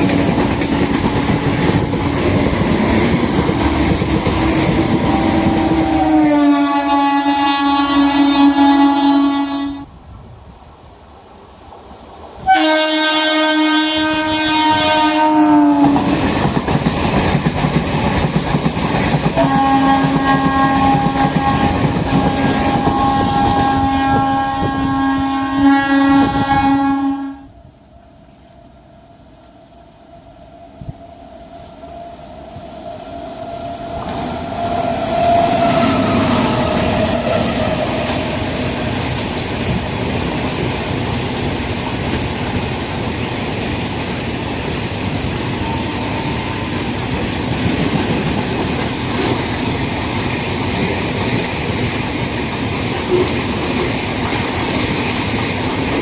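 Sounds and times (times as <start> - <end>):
train rumble: 0.0 - 56.0
train horn blasting: 4.3 - 9.9, 12.4 - 16.2, 19.4 - 27.6, 31.6 - 38.9, 45.6 - 46.7.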